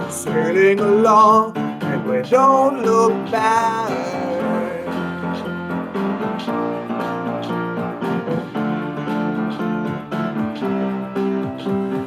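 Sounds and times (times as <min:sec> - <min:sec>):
keyboard and guitar chords: 0:00.0 - 0:12.0.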